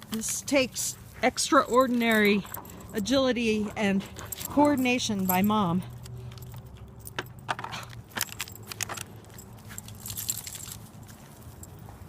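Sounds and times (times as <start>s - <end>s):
collar tags jingling: 0.0s - 12.0s.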